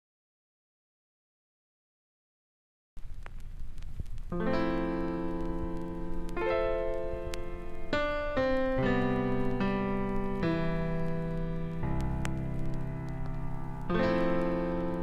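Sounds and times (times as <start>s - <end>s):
electric piano chords: 4.3s - 15.0s.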